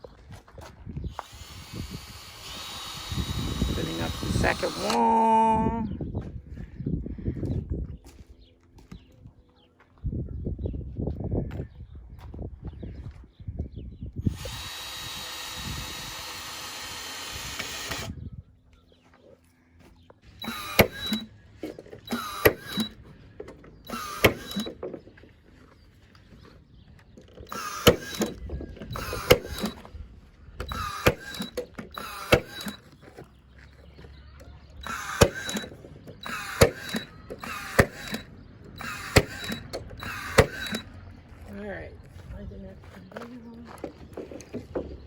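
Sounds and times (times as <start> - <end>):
nail gun firing into wood: 1.2 - 5.1, 14.3 - 18.2, 20.4 - 21.3, 22.0 - 23.0, 23.9 - 24.9, 27.5 - 29.8, 30.6 - 32.8, 34.8 - 40.9.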